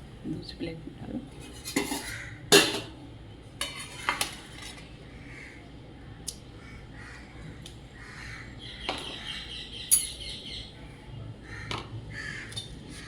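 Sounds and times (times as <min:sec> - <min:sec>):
birds chirping: 0:05.1 - 0:12.5.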